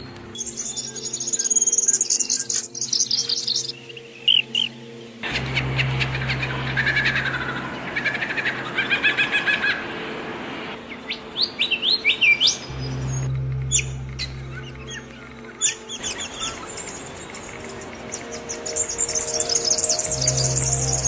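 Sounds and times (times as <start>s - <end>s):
songbirds chirping and trilling: 0.0s - 21.0s
low hum: 5.2s - 8.9s, 12.6s - 21.0s.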